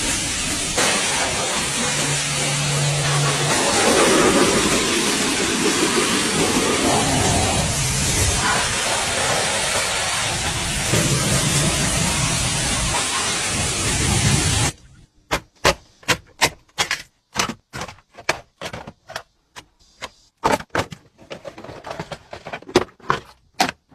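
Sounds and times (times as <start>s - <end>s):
loud steady hiss: 0.0s - 14.8s.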